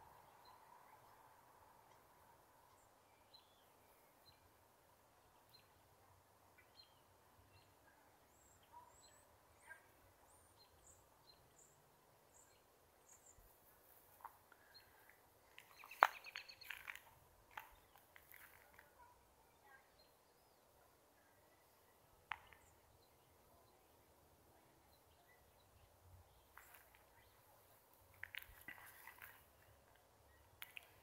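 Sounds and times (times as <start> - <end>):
high bird chirps: 15.6 - 16.9.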